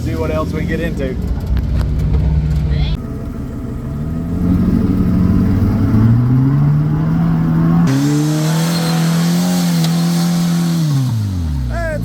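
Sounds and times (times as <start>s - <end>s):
off-road vehicle engine under load: 0.0s - 12.0s.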